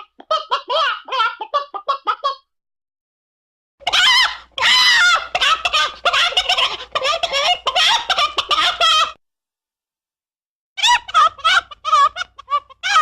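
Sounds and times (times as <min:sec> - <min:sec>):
chicken clucking and squawking: 0:00.0 - 0:02.5, 0:03.8 - 0:09.2, 0:10.8 - 0:13.0.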